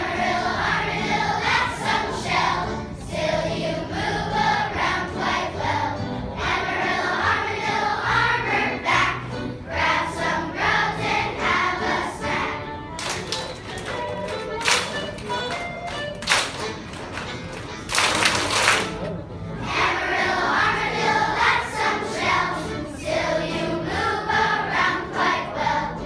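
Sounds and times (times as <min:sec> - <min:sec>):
children's choir singing: 0:00.0 - 0:13.2, 0:19.6 - 0:26.0
instrumental accompaniment: 0:06.5 - 0:25.6.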